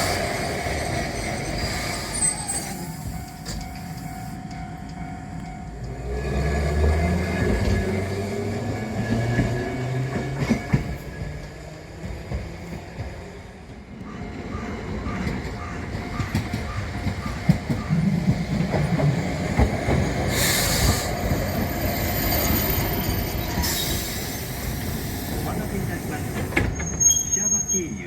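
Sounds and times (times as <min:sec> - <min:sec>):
tram rumbling over rails: 0:00.0 - 0:28.0
crossing bell ringing: 0:00.9 - 0:07.6.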